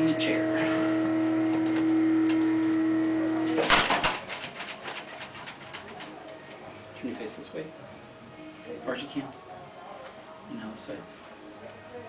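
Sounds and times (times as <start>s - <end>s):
machine hum: 0.0s - 8.5s.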